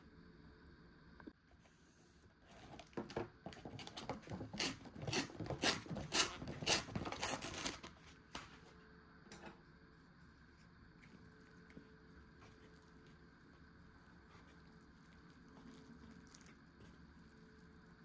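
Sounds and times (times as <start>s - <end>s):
food packaging crinkling: 3.8s - 8.0s.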